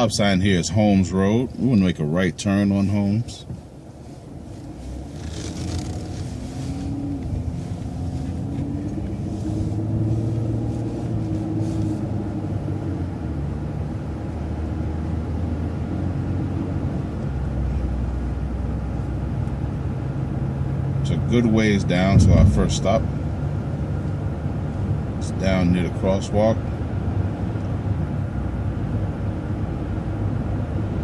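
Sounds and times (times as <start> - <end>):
bus engine accelerating: 3.4 - 26.0.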